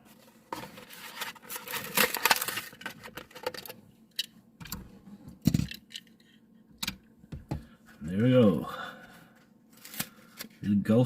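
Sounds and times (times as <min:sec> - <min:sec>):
plastic packaging crackling: 0:00.8 - 0:03.6.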